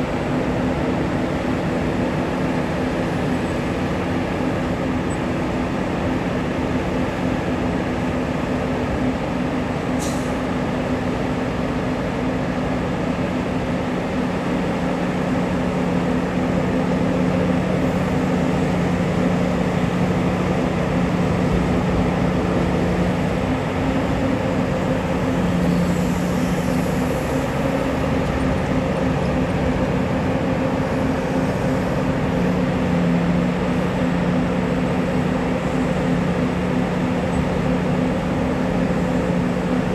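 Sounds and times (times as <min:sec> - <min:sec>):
heavy diesel engines droning: 0:00.0 - 0:39.9.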